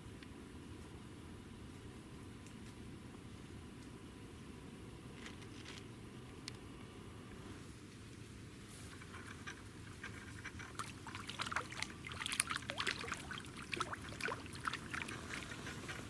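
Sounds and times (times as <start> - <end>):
water splashing and dripping: 10.6 - 16.0.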